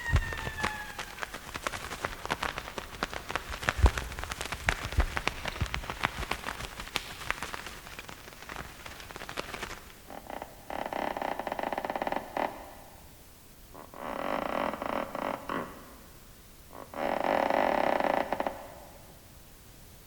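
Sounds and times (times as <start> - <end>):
low thuds: 0.0 - 7.5
rain-like patter: 0.0 - 10.1.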